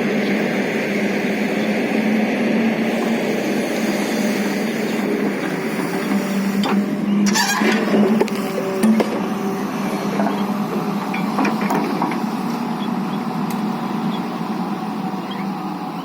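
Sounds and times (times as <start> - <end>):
low motor hum: 0.0 - 16.0.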